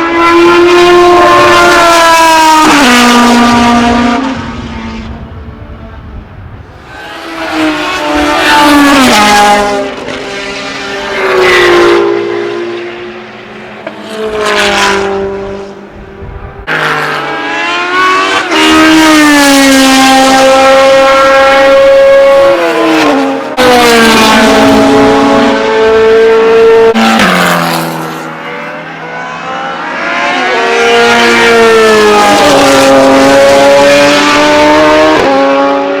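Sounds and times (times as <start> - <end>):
racing car engine revving: 0.0 - 36.0.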